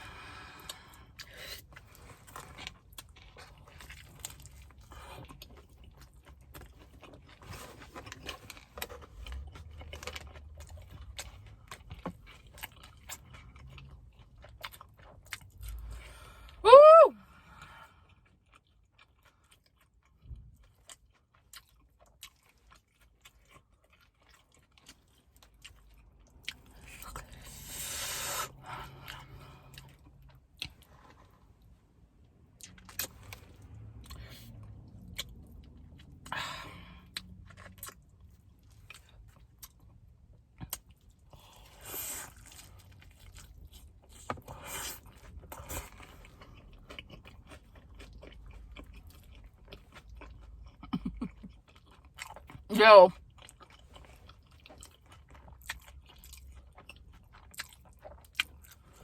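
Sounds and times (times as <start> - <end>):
person chewing crunchy food: 0.0 - 16.6, 17.4 - 59.0.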